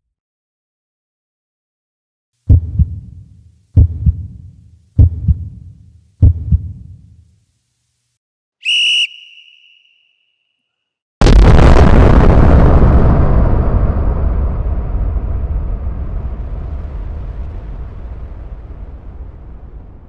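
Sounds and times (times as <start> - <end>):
deep double thumps: 2.5 - 7.2
short high whistle tone: 8.6 - 10.6.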